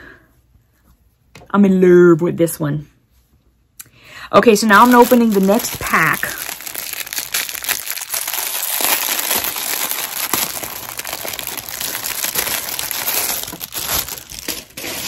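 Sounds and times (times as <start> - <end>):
packaging crinkling: 4.5 - 15.0.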